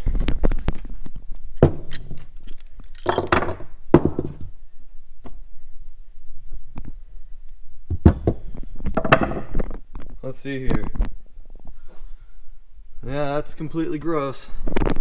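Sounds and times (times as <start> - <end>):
metal tools clinking: 1.8 - 4.4.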